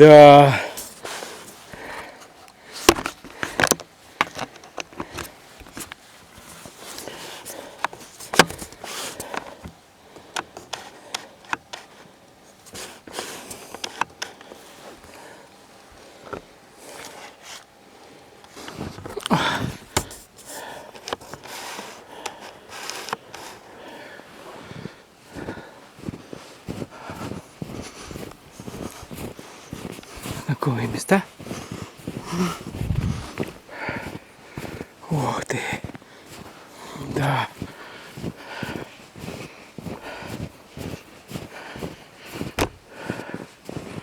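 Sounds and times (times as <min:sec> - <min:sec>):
footsteps crunching through snow: 0:05.3 - 0:09.3, 0:24.3 - 0:44.0
camera handling noise: 0:07.8 - 0:09.5
clothing rustling: 0:31.2 - 0:35.0, 0:35.8 - 0:44.0.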